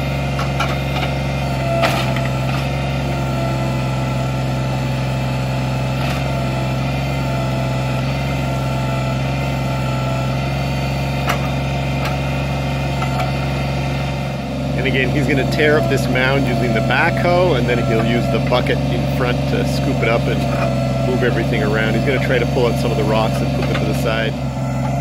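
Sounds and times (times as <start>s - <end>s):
diesel tractor engine running: 0.0s - 25.0s
sharp engine knocks: 0.3s - 2.8s, 11.2s - 12.3s.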